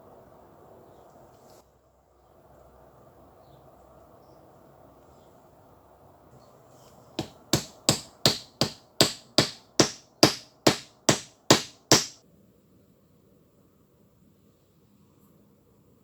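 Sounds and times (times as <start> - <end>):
hammer striking metal: 7.2 - 12.2.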